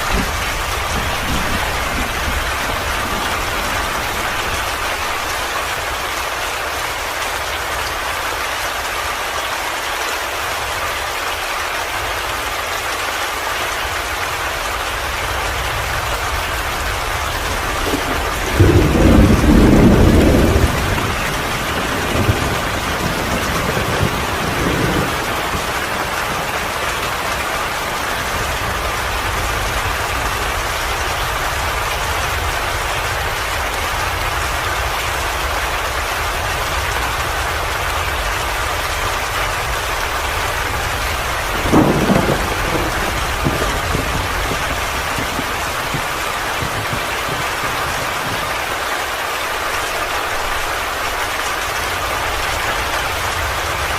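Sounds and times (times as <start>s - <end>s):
thunder rumbling: 0.0s - 6.1s, 14.9s - 48.9s
steady rain: 0.0s - 53.9s.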